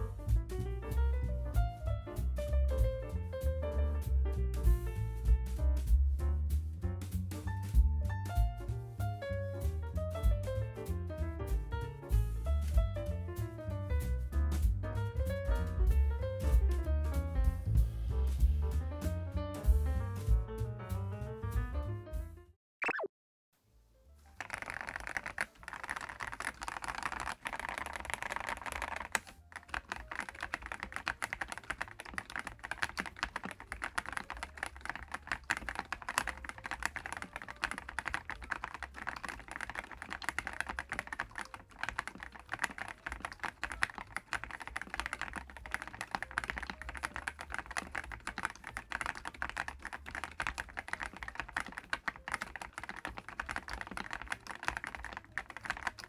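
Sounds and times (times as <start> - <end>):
mechanical keyboard typing: 24.3 - 56.0.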